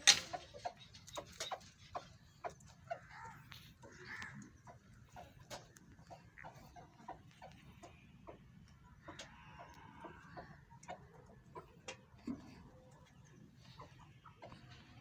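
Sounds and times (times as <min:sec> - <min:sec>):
faint clicks and ticks: 0:00.0 - 0:14.8.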